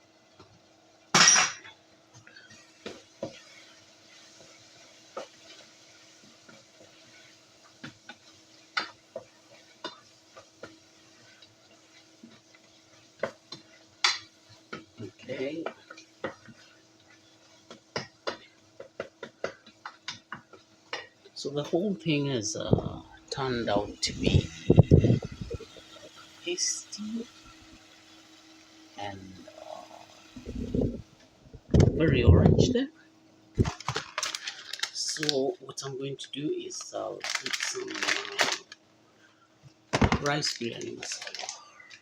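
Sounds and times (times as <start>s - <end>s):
faint sizzling: 0.0s - 42.0s
utensil scraping frying pan: 2.3s - 19.9s
low hum: 22.6s - 26.1s, 29.2s - 32.8s.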